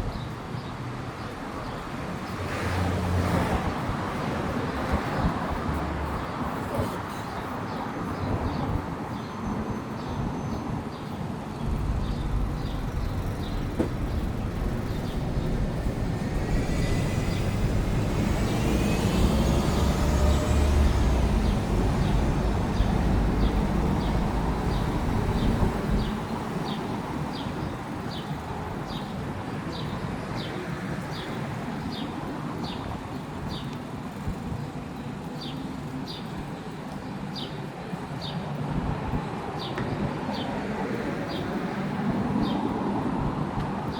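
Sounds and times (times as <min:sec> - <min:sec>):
city street traffic: 0:00.0 - 0:43.9
heavy vehicle passing with whine: 0:11.6 - 0:26.4.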